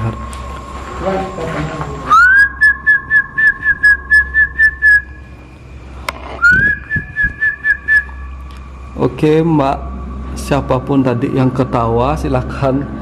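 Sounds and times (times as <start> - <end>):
person whistling: 2.1 - 5.3, 6.4 - 8.4.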